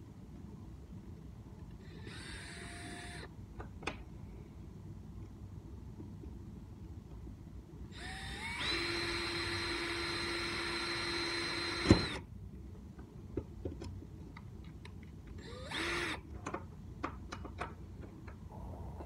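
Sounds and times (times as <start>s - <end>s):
cordless drill whining: 1.8s - 3.3s, 8.0s - 12.2s, 15.4s - 16.2s.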